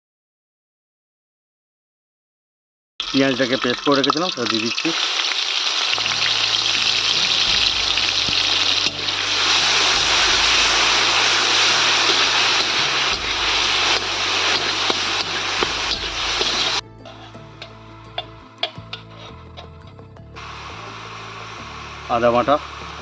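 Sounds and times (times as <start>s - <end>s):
paste sizzling in hot oil: 3.0s - 19.2s, 20.4s - 23.0s
low hum: 5.9s - 16.8s, 20.4s - 23.0s.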